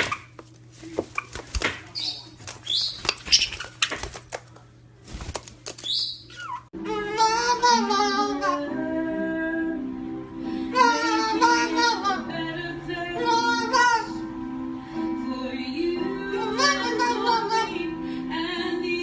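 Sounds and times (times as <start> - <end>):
high voice singing with vibrato: 6.8 - 14.4, 15.0 - 19.0.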